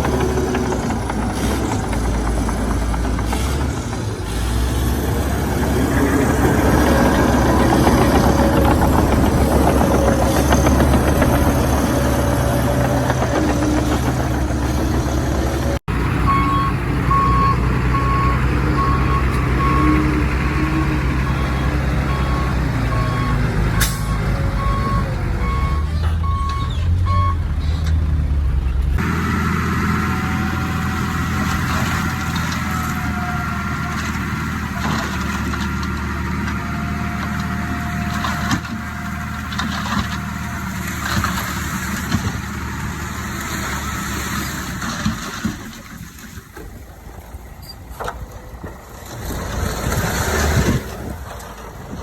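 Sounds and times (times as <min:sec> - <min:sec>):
heavy diesel engine running: 0:00.0 - 0:52.0
reversing alarm beeping: 0:16.3 - 0:27.4.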